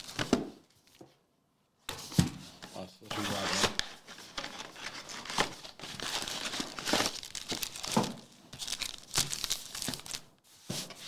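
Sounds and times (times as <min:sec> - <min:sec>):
plastic wrapping crinkling and tearing: 0:00.0 - 0:00.3, 0:03.1 - 0:10.4.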